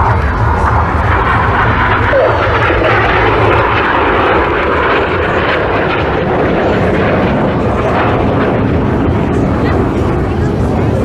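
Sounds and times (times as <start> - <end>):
jet engines in flight: 0.0 - 11.0.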